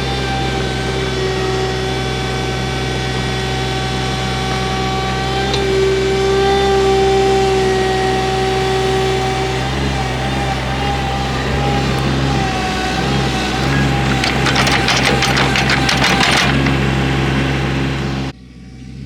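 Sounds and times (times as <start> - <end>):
excavator engine hum: 0.0 - 19.0.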